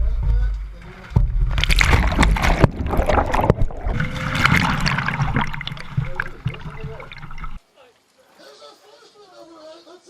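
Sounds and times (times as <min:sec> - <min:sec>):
water splashing and sloshing: 0:01.2 - 0:07.6.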